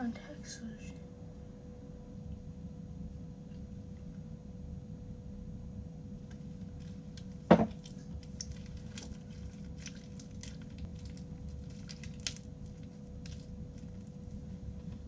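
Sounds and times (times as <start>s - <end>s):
hands kneading crunchy slime: 6.4s - 15.0s.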